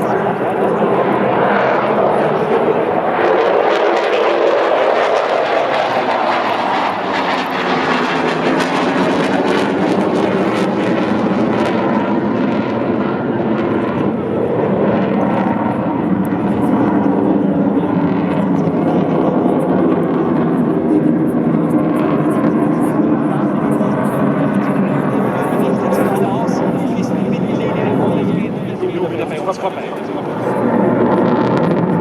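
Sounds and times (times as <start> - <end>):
jet engine roaring: 0.0 - 32.0.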